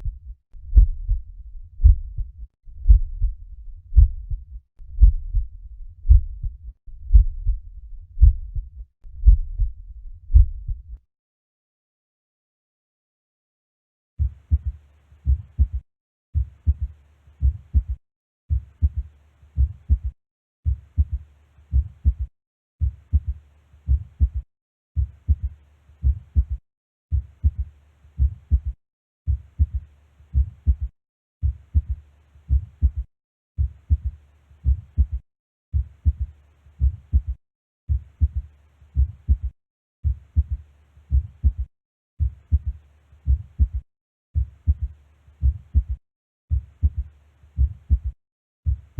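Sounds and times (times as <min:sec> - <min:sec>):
heartbeat through stethoscope: 0:00.0 - 0:11.0, 0:14.2 - 0:15.8, 0:16.4 - 0:24.4, 0:25.0 - 0:43.8, 0:44.4 - 0:48.9.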